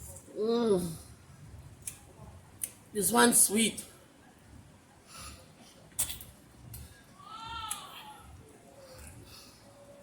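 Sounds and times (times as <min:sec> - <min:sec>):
faint mouth sound eating: 0:05.9 - 0:06.8.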